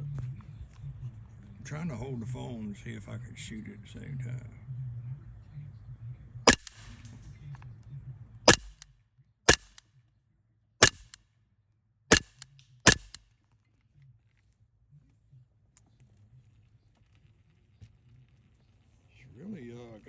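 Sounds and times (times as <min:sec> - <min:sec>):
air pistol shots popping: 0:06.5 - 0:07.0, 0:08.5 - 0:08.8, 0:09.5 - 0:09.8, 0:10.8 - 0:11.2, 0:12.1 - 0:13.2.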